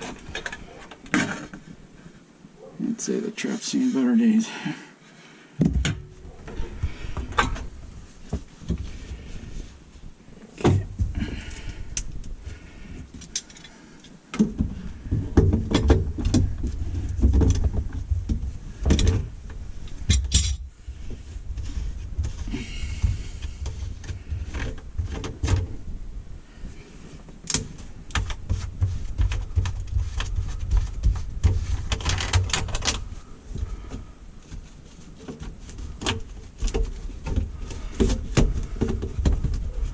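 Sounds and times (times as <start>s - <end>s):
low rumbling handling noise: 14.4s - 39.9s.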